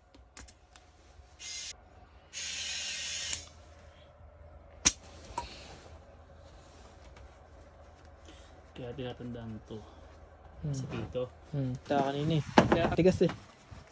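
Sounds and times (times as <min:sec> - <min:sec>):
air hissing at tire valve: 0:02.3 - 0:03.6.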